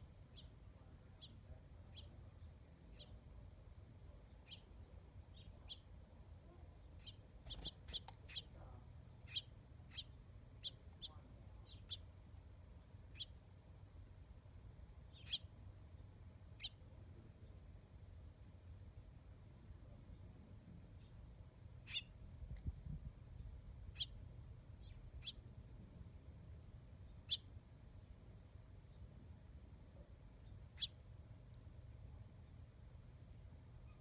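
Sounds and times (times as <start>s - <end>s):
small birds chirping: 0.3s - 3.2s, 4.2s - 6.0s, 6.8s - 12.1s, 13.1s - 13.4s, 15.1s - 16.8s, 21.8s - 22.7s, 23.4s - 24.2s, 24.8s - 25.5s, 27.0s - 28.1s, 30.4s - 31.0s
faint low rumble: 18.8s - 34.0s.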